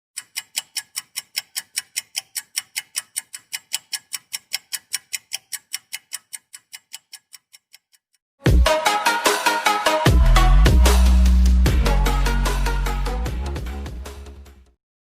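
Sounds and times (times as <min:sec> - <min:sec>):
rapid even ticking: 0:00.2 - 0:08.2.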